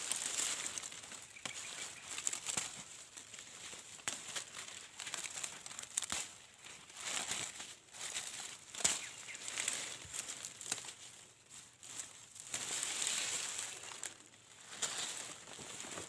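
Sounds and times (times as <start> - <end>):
dry corn husks crackling: 0.0 - 16.0
sharp snaps: 8.7 - 9.2.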